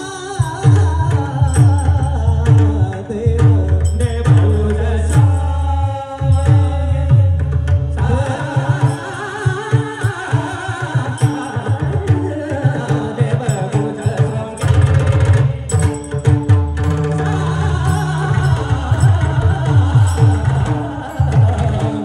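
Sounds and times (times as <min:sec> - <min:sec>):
person singing: 0:00.0 - 0:22.0
quick light percussion strikes: 0:00.0 - 0:22.0
steady held tones: 0:08.2 - 0:22.0.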